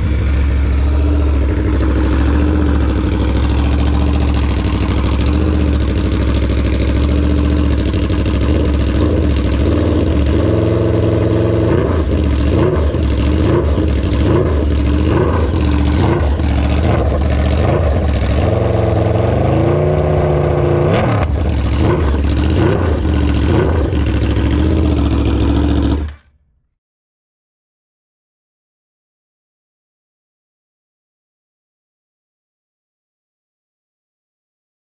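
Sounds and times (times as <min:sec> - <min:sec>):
motorcycle engine revving: 0:00.0 - 0:26.4.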